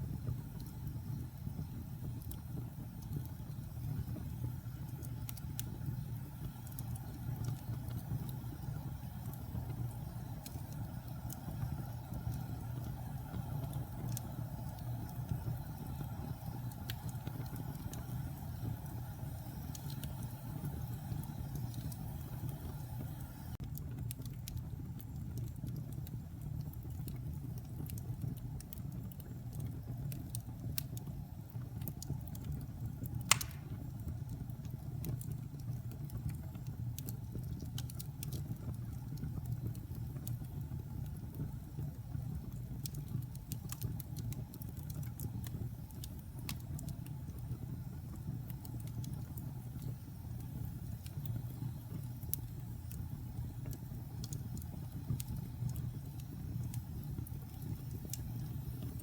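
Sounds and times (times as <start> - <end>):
fire rumbling: 0.0 - 59.0
wood crackling: 33.0 - 34.0
loud wood pop: 33.3 - 33.7.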